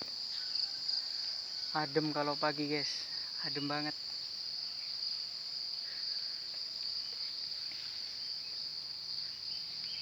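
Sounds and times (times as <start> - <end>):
insect chorus trilling: 0.0 - 10.0.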